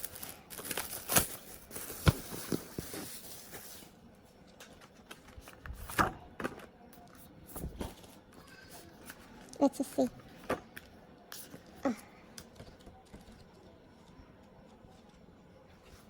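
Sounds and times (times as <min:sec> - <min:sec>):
paper and plastic rustling: 0:00.0 - 0:09.6.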